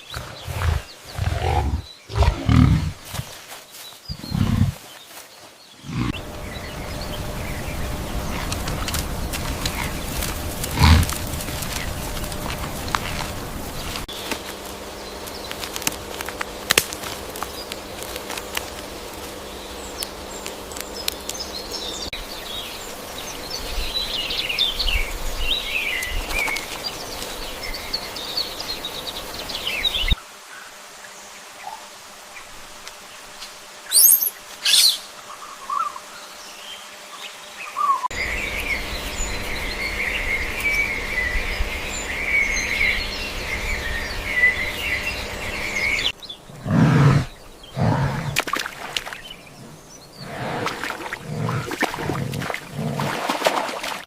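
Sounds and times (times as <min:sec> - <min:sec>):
small birds chirping: 0:00.0 - 0:16.3, 0:33.9 - 0:53.0
sharp high bird calls: 0:33.9 - 0:36.0.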